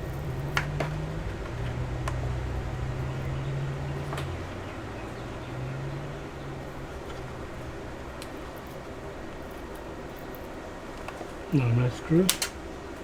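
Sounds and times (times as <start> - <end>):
steady low hum: 0.0 - 13.0
tool clicking on plastic case: 12.3 - 12.6.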